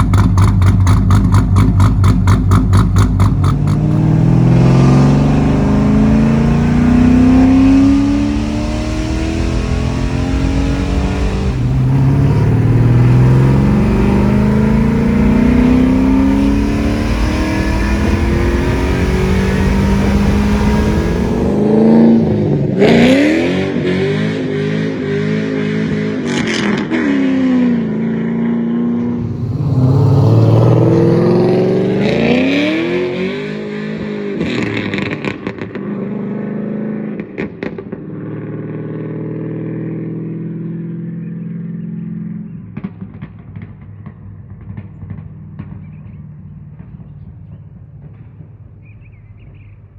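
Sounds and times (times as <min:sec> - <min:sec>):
exhaust cracks: 0:00.0 - 0:21.7, 0:29.0 - 0:35.8
engine revving: 0:00.0 - 0:36.3.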